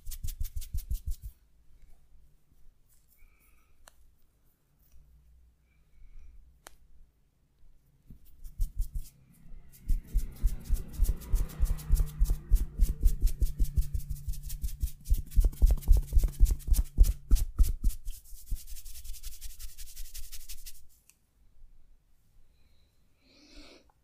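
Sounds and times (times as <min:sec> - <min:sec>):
hands striking body in tapping massage: 0:14.7 - 0:18.0.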